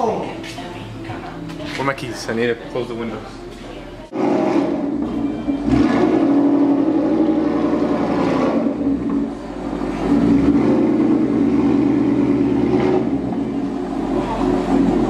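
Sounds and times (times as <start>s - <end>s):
car engine running: 4.1s - 15.0s.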